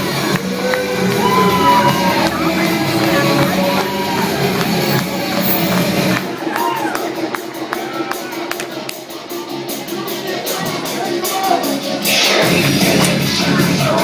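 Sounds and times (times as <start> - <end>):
crowd shouting and whooping: 0.0 - 9.3
loud music with steady beat: 0.0 - 14.0.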